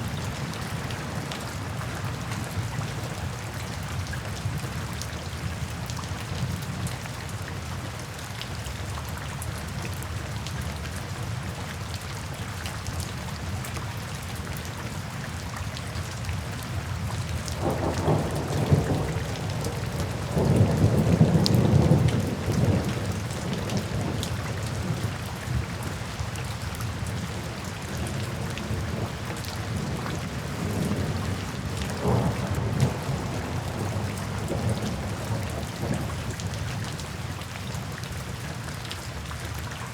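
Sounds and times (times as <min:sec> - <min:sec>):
steady rain falling: 0:00.0 - 0:39.9
thunder rumbling: 0:17.6 - 0:25.7, 0:28.0 - 0:36.3.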